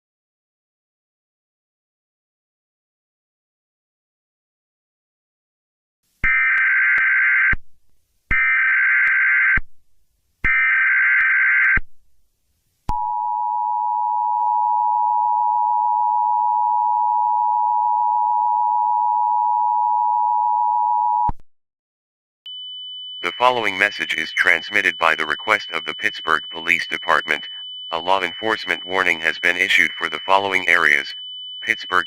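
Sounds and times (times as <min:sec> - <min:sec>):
two-tone attention signal: 0:23.2 - 0:32.0.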